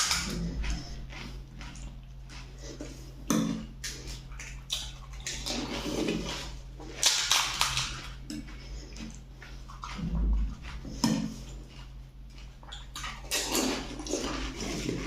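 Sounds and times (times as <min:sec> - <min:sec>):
crisp food crunching: 0:00.0 - 0:15.0
liquid being slurped: 0:03.9 - 0:15.0.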